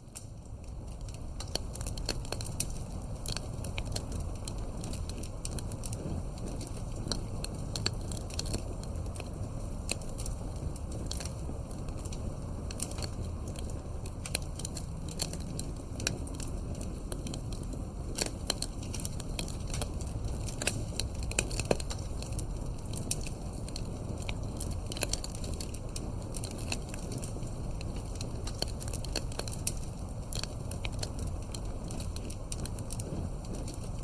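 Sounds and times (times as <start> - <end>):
campfire crackling: 0.0 - 34.0.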